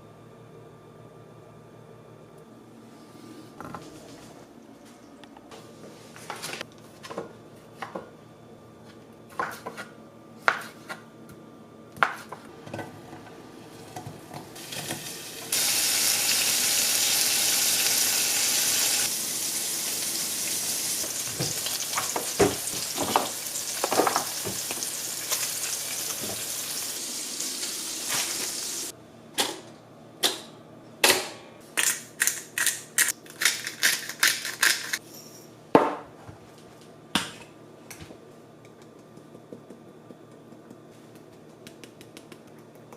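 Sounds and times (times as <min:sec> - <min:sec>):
food sizzling in a frying pan: 0:14.6 - 0:28.9
sharp taps and clicks: 0:38.7 - 0:42.9.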